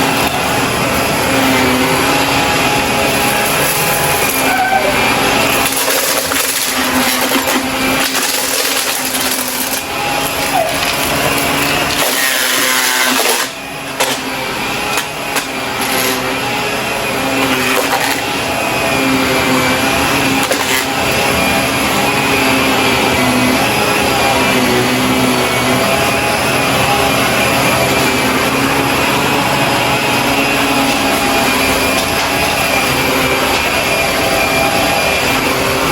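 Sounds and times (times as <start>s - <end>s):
debris crunching in vacuum: 0.0s - 16.4s, 17.3s - 35.9s
vacuum cleaner running: 0.0s - 35.9s.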